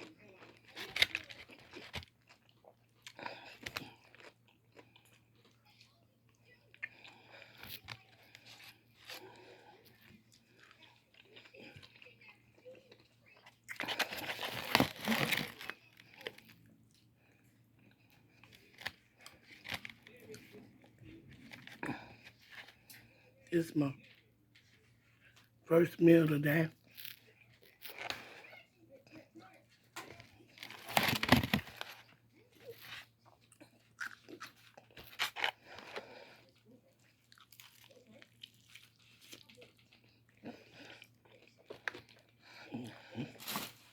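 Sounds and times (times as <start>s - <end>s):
chewing: 0.0s - 25.5s, 26.8s - 43.9s
crispy food crunching: 0.0s - 43.9s.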